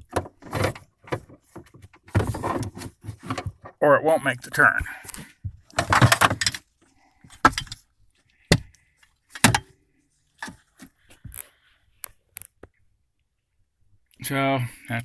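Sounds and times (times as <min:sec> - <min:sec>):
seatbelt hardware rattling and clicking: 0:05.7 - 0:06.7, 0:07.3 - 0:07.8, 0:09.4 - 0:09.7.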